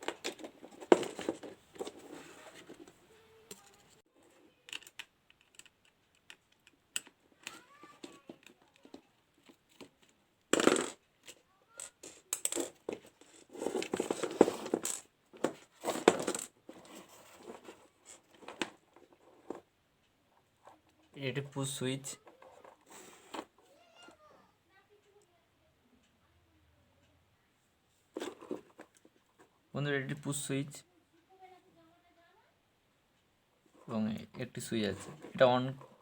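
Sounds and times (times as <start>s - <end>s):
plastic parts clicking and rattling: 0.0s - 19.7s.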